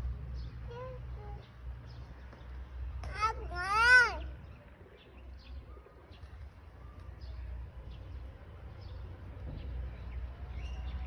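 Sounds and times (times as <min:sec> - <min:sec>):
low steady background rumble: 0:00.0 - 0:11.0
bird chirps: 0:08.8 - 0:11.0.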